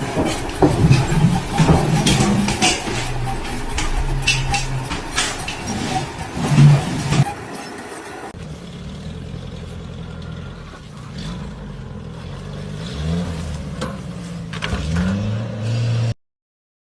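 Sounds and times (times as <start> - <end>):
sharp knocks: 0.0 - 7.4
engine revving: 0.0 - 16.2.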